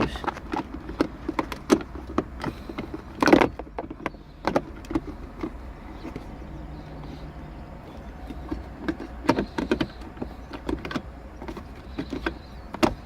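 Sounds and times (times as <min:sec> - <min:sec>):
steady low hum: 0:00.0 - 0:13.0
plastic trim clicks and knocks: 0:08.2 - 0:13.0.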